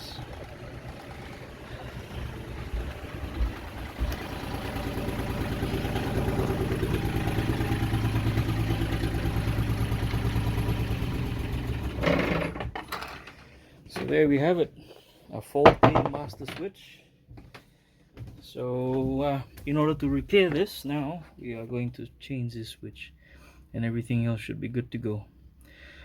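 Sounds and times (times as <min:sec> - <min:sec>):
diesel engine idling: 0:00.0 - 0:12.2.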